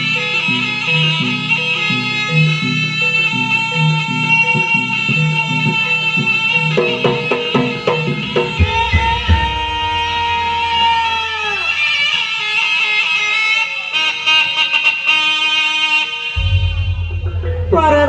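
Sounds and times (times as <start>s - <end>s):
traditional ensemble music: 0.0s - 18.0s
deep booming tone: 8.1s - 10.5s, 16.4s - 18.0s
low drum strokes: 16.4s - 18.0s.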